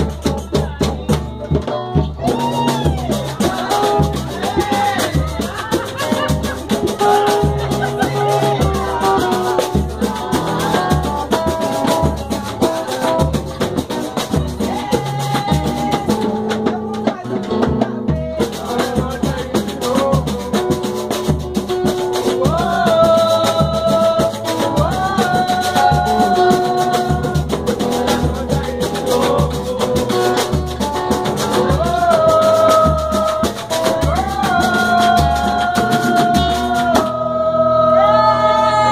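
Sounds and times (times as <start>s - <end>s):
percussion group drumming: 0.0s - 37.8s.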